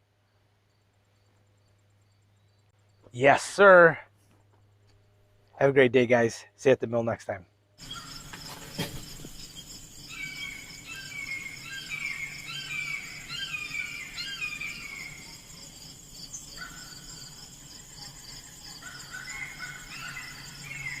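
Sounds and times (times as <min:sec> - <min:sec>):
insects droning: 0:00.0 - 0:21.0
songbirds singing: 0:07.8 - 0:21.0.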